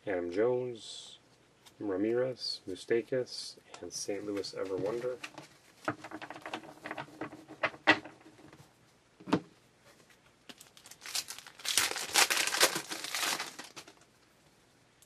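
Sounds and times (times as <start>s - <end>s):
wrapper tearing and crinkling: 10.5s - 14.1s.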